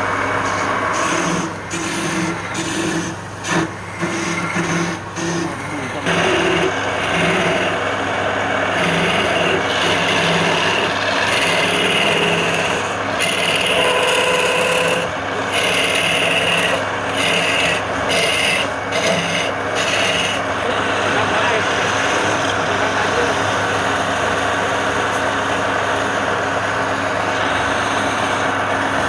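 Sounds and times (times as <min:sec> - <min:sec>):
lathe motor humming: 0:00.0 - 0:29.0
wood rasping against tool: 0:00.9 - 0:07.8, 0:08.7 - 0:20.9.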